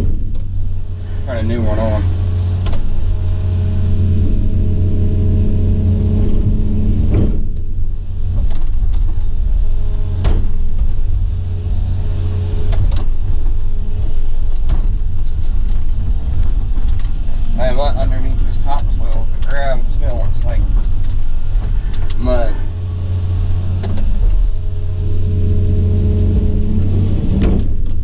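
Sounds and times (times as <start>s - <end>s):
excavator diesel engine drone: 0.0s - 28.0s
sharp knocks: 10.1s - 11.0s.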